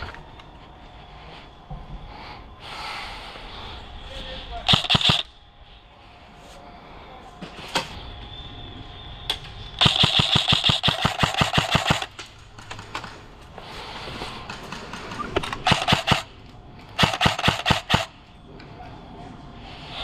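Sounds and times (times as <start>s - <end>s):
airsoft gun firing: 4.7s - 5.3s, 9.8s - 13.2s, 14.4s - 16.3s, 17.0s - 18.1s.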